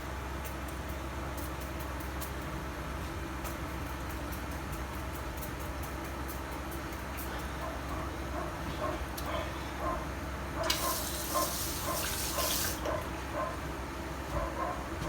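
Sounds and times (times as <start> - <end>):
toilet tank water hissing: 10.6 - 13.0.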